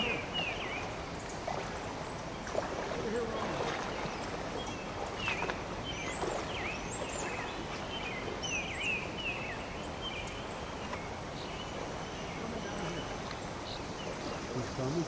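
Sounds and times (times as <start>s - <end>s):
creek water running: 0.0s - 15.0s
small birds chirping: 0.0s - 15.0s.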